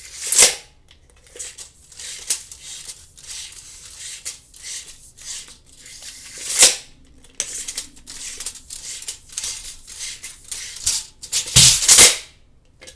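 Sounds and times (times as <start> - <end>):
tape measure rattling and rasping: 7.4 - 12.2.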